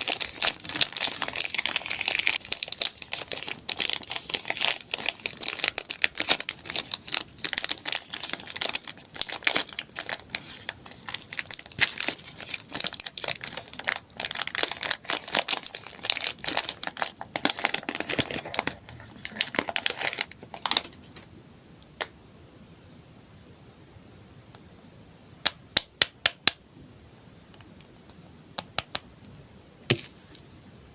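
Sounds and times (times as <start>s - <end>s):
candy wrappers crinkling: 0.0s - 21.3s.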